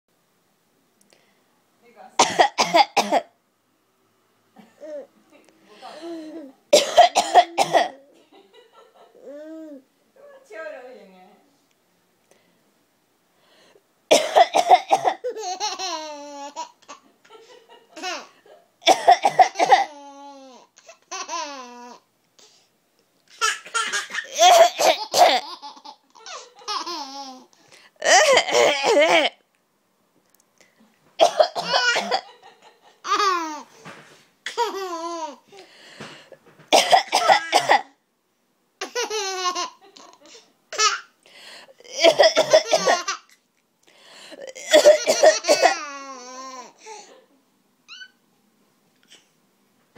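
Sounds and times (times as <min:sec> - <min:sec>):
person coughing: 0:02.2 - 0:03.3, 0:06.7 - 0:08.1, 0:14.1 - 0:15.3, 0:18.8 - 0:19.9, 0:23.7 - 0:25.4, 0:28.0 - 0:29.4, 0:31.2 - 0:32.3, 0:36.0 - 0:38.0, 0:41.9 - 0:43.2, 0:44.4 - 0:45.8.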